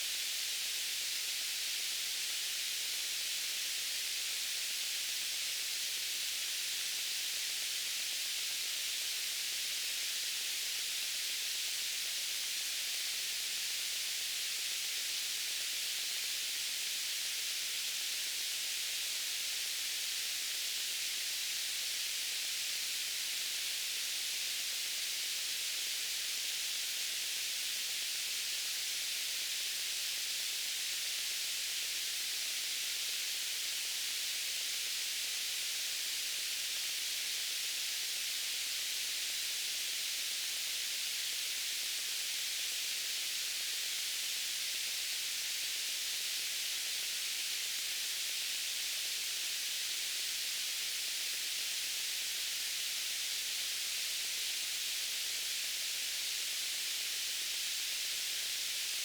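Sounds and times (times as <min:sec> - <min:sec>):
steady white noise hiss: 0:00.0 - 0:59.0.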